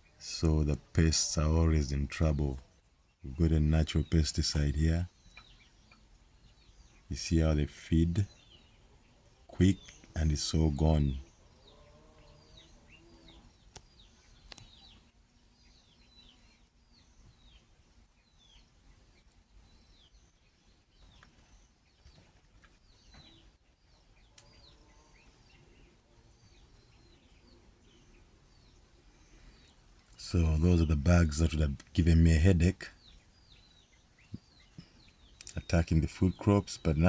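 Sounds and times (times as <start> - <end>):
faint birds chirping: 0.0 - 37.0
soft clicks: 13.7 - 14.7.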